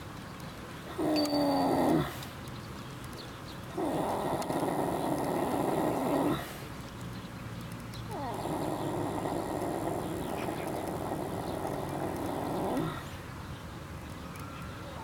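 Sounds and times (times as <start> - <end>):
horse snoring: 1.0 - 2.2, 3.8 - 6.7, 8.1 - 13.1.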